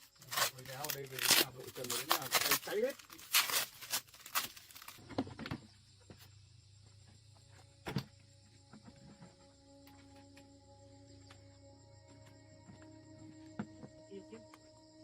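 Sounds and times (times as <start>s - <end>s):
soft background music: 7.6s - 15.0s.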